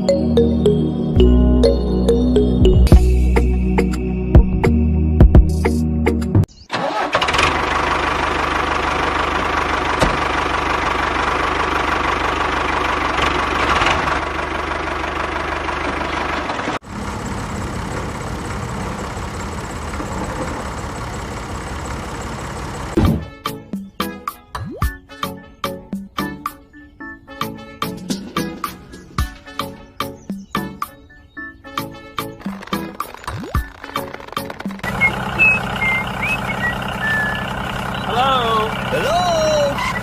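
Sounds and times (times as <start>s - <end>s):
background music: 0.0s - 6.5s, 23.0s - 34.9s
small tractor motor running: 6.7s - 23.0s, 33.7s - 40.0s.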